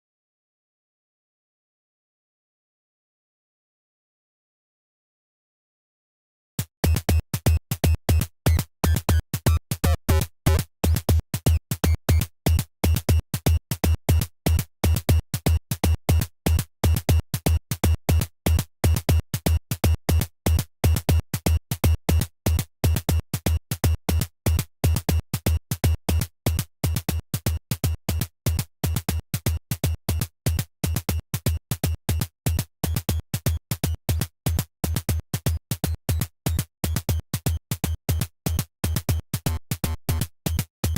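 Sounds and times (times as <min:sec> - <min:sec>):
synthesized kick drum: 0:06.6 - 0:19.6, 0:32.6 - 0:40.9
synthesized snare drum: 0:06.9 - 0:13.6, 0:32.5 - 0:40.9.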